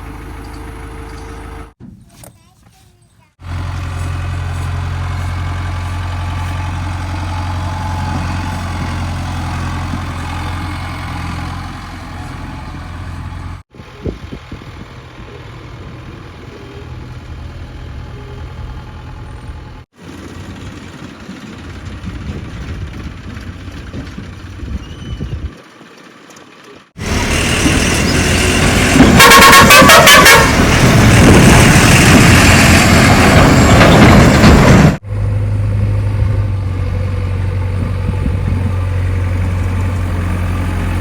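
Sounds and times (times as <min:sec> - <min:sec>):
diesel engine running: 0:00.0 - 0:01.8, 0:03.4 - 0:41.0.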